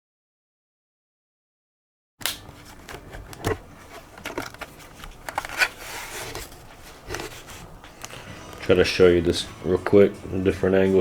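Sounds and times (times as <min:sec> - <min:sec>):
handling clicks and knocks: 0:02.3 - 0:08.8.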